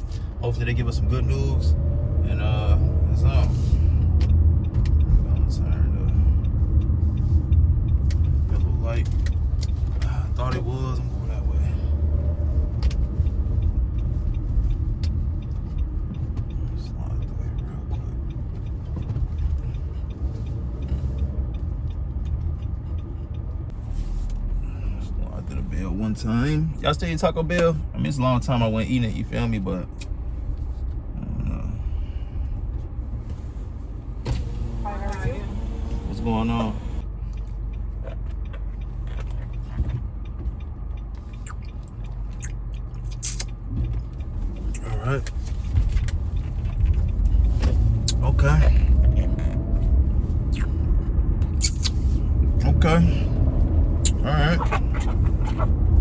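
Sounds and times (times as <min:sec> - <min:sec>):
car engine and road rumble: 0:00.0 - 0:56.0
faint regular ticking: 0:02.3 - 0:23.8, 0:35.8 - 0:51.3.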